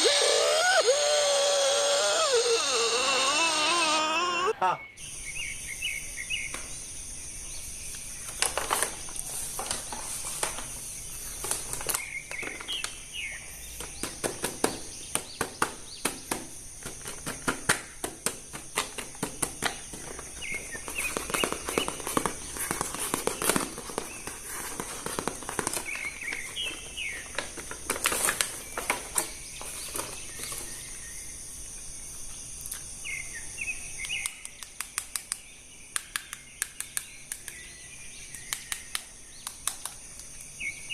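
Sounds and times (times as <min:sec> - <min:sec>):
birds chirping: 0:00.0 - 0:08.4.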